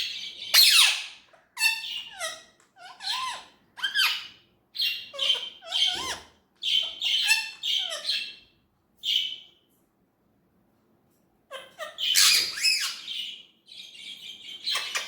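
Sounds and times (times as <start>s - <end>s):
parakeet squawky calls: 0.0s - 8.4s, 11.5s - 15.0s.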